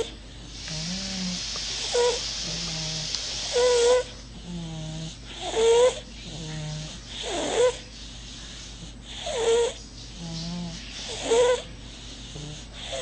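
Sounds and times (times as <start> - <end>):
snoring with whistling wheeze: 9.1 - 11.7, 12.3 - 13.0.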